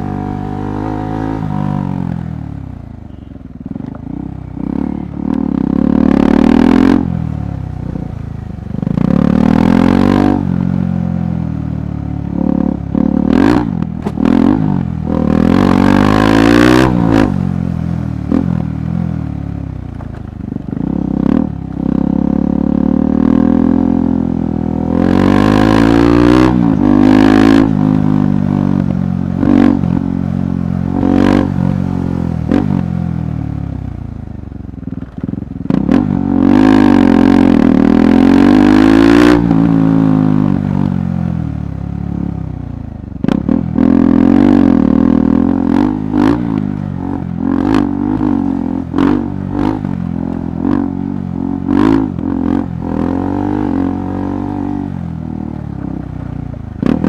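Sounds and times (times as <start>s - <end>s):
motorcycle engine revving: 0.0s - 57.0s
knocks and clatter from bike: 13.9s - 14.3s, 19.8s - 20.8s, 34.9s - 36.1s.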